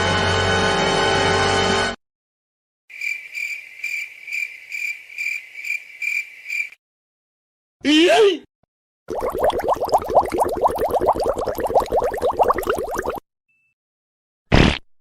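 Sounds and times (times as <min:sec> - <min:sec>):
cricket chirping: 0:02.9 - 0:06.8.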